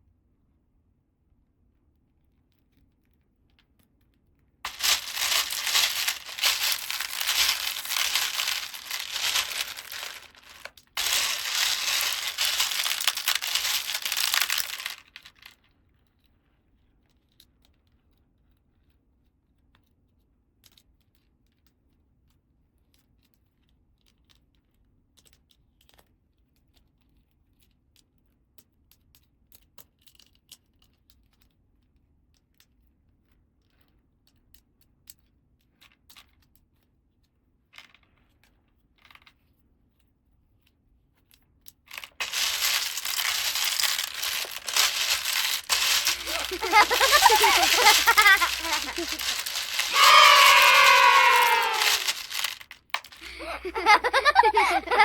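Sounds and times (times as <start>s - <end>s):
packaging crinkling and tearing: 4.7s - 15.5s, 42.0s - 55.0s.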